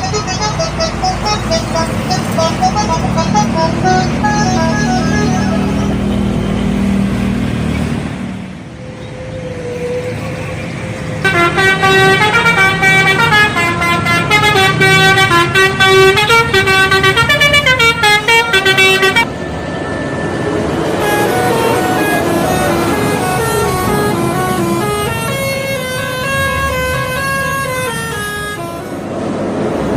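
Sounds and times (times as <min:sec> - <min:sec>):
multi-tone air horn tune: 0:00.0 - 0:06.3, 0:11.2 - 0:19.3, 0:21.0 - 0:29.1.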